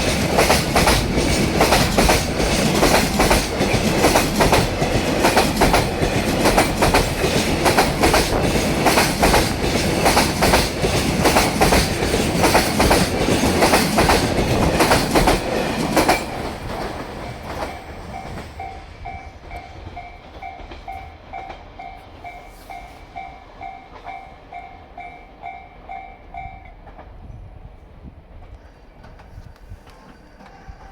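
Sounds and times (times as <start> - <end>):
freight train clattering over rails: 0.0 - 27.4
level crossing warning bell: 17.2 - 26.9.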